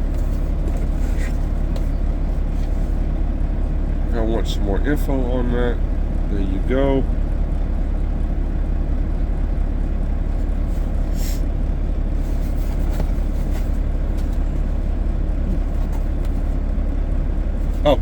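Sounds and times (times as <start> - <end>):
vehicle engine idling: 0.0 - 18.0
cardboard box rustling: 12.3 - 14.8.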